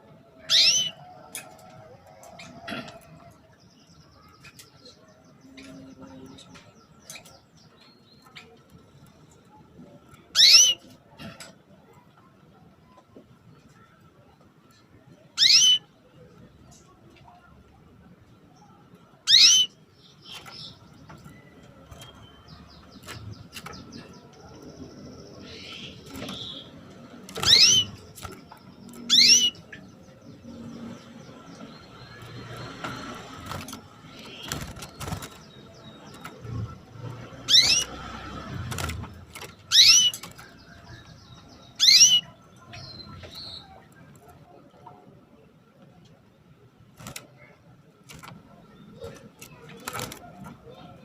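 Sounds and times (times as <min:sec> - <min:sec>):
faint chirps and clicks: 0:01.2 - 0:13.9
canary rising calls: 0:27.3 - 0:28.2, 0:37.4 - 0:38.0.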